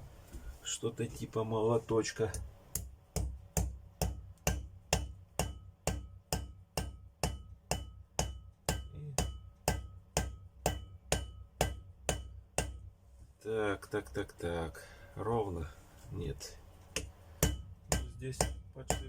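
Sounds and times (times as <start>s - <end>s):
small hammer tapping metal: 2.3s - 12.9s, 16.9s - 19.0s.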